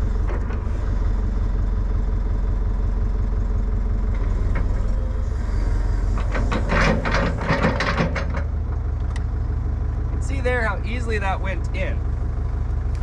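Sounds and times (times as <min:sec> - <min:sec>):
diesel engine running: 0:00.0 - 0:13.0
metal clattering and scraping: 0:05.8 - 0:08.5.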